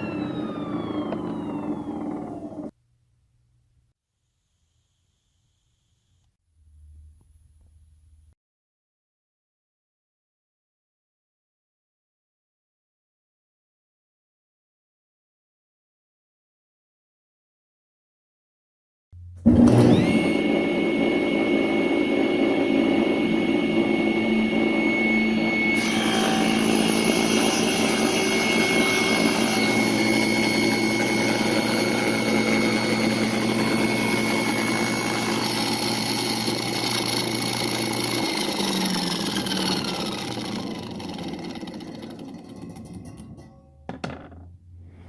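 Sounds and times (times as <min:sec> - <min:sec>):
electric woodworking machine running: 0:00.0 - 0:02.7, 0:19.5 - 0:43.3.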